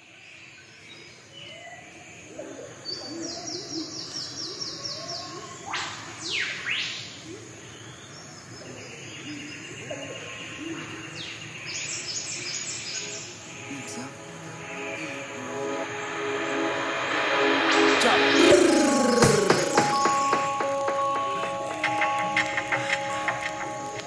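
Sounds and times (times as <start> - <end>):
quick high bird notes: 13.6 - 24.0.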